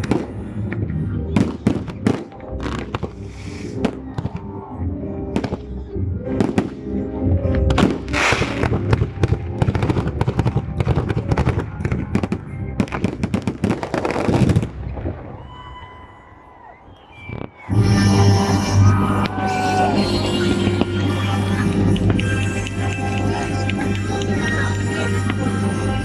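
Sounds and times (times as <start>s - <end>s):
fireworks bangs and crackles: 0.0s - 4.5s, 5.3s - 6.8s, 7.4s - 15.4s
music playing: 0.0s - 15.1s, 17.6s - 26.0s.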